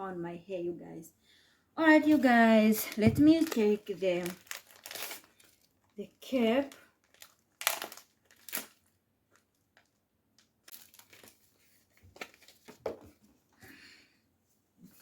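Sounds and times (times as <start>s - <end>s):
plastic packaging crinkling: 2.1s - 13.0s
packet tearing open: 3.3s - 5.7s, 7.0s - 9.9s, 10.6s - 11.4s.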